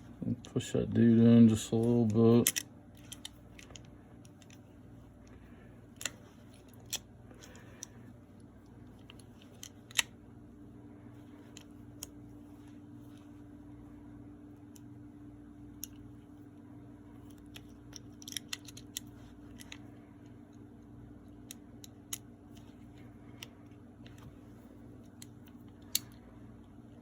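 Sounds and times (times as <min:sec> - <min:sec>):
steady low hum: 0:00.0 - 0:27.0
metal pistol parts clicking: 0:01.8 - 0:04.7, 0:05.9 - 0:07.9, 0:08.8 - 0:10.2, 0:17.2 - 0:20.6, 0:21.2 - 0:24.3, 0:25.0 - 0:26.2.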